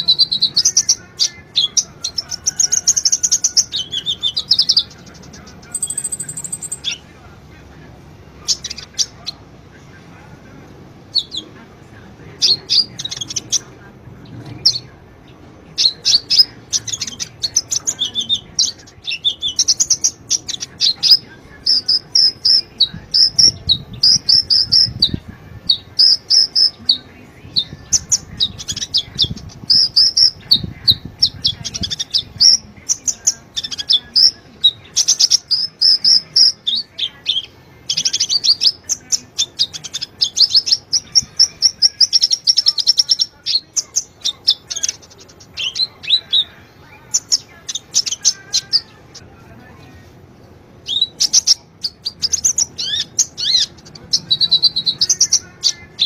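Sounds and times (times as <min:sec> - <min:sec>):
bird chirping and trilling: 0:00.0 - 0:07.1, 0:11.1 - 0:11.5, 0:12.4 - 0:13.7, 0:14.3 - 0:49.2, 0:50.8 - 0:56.0.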